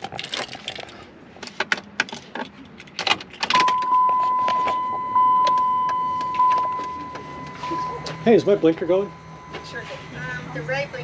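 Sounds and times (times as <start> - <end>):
high electronic warning tone: 3.5 - 11.0.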